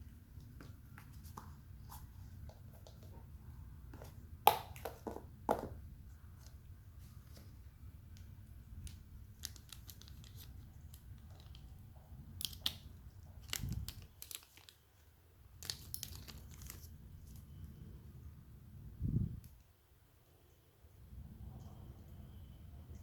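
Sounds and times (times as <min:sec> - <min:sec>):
faint low hum: 0:05.2 - 0:23.0
packaging crinkling and tearing: 0:08.8 - 0:11.7, 0:12.4 - 0:14.9, 0:15.6 - 0:17.4.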